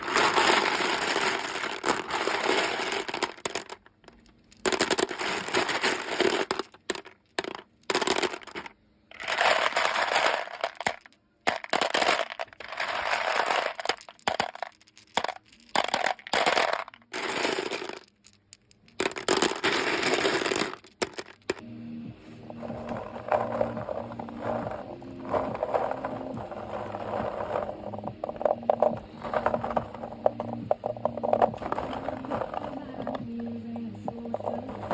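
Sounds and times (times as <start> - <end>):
beads clattering: 0.0 - 21.6, 22.2 - 34.9
low steady hum: 21.0 - 34.9.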